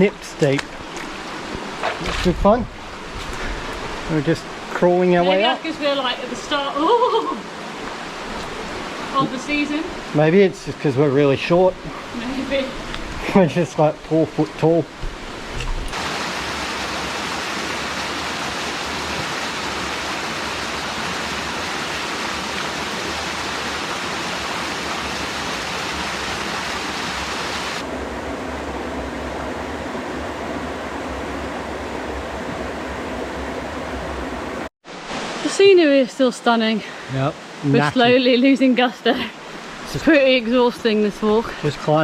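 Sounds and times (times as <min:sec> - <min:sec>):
waterfall rushing: 0:00.0 - 0:27.9, 0:36.9 - 0:40.6.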